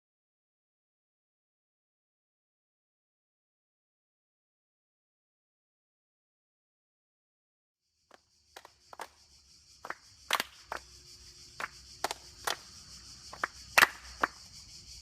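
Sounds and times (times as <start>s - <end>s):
steady high hiss: 7.9s - 15.0s
hands clapping and slapping: 8.1s - 9.2s, 9.8s - 10.9s, 11.6s - 14.6s.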